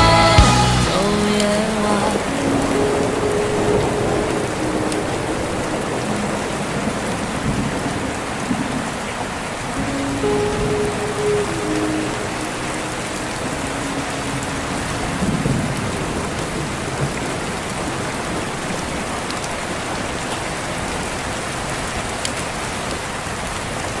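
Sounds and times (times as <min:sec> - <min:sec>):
song backing notes: 0:00.0 - 0:06.8, 0:09.8 - 0:15.4
heavy rain: 0:00.0 - 0:24.0.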